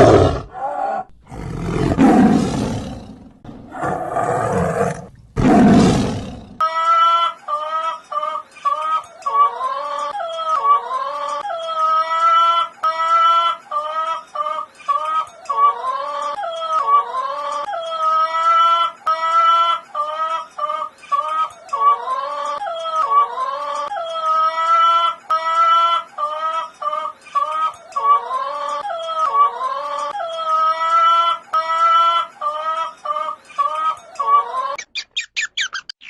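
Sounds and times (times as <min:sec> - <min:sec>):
lion roaring: 0:00.0 - 0:06.6.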